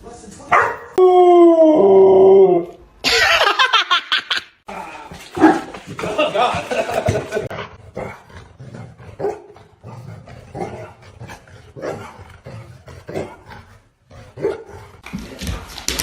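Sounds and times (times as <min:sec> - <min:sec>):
dog barking and growling: 0:00.5 - 0:01.0, 0:04.7 - 0:15.1.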